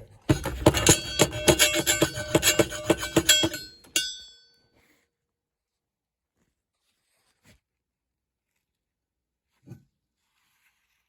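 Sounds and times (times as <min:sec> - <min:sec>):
ringing knocks on brass: 0:00.3 - 0:04.3.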